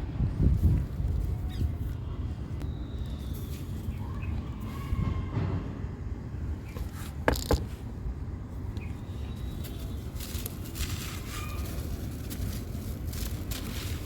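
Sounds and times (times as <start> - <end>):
dry block crunching: 9.4 - 14.0.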